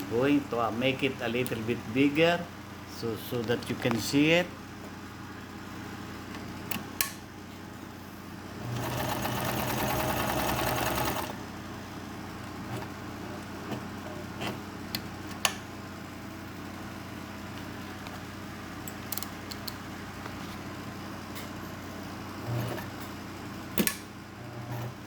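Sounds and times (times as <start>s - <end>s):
sewing machine stitching: 8.6s - 11.4s.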